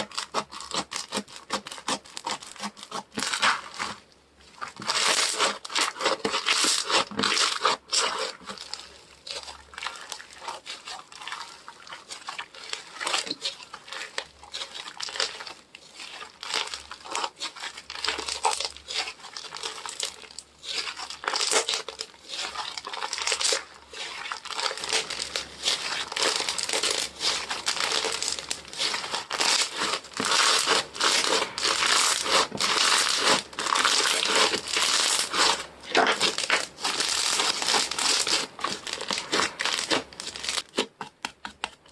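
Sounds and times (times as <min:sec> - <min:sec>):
slime crackling and popping: 0:00.0 - 0:41.9.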